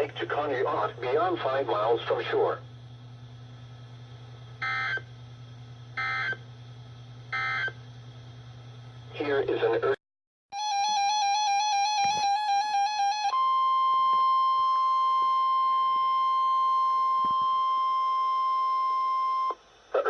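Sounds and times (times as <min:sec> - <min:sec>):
steady warning alarm tone: 0:04.6 - 0:05.1, 0:06.0 - 0:06.4, 0:07.3 - 0:07.8, 0:10.6 - 0:19.6.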